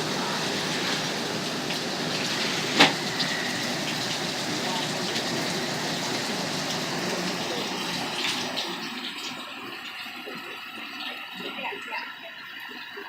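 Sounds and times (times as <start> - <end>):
heavy rain pouring: 0.0 - 9.0.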